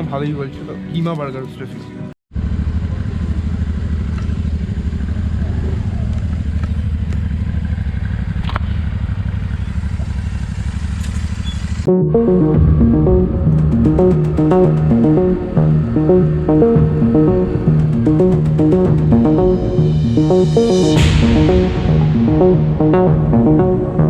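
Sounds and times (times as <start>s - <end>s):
music: 0.0s - 2.1s, 11.9s - 24.0s
scooter engine running: 2.4s - 11.5s.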